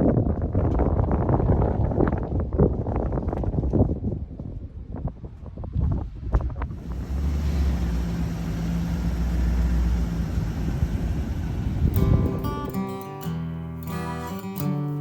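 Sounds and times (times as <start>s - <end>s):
rushing wind-like noise: 0.0s - 12.8s
vehicle engine running: 6.7s - 12.8s
acoustic guitar music: 11.7s - 15.0s.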